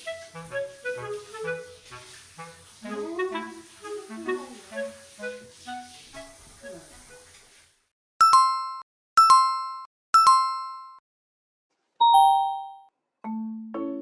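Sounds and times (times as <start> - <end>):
light mallet instrument music: 8.2 - 10.8, 12.0 - 14.0
bright two-note chime: 12.0 - 12.9.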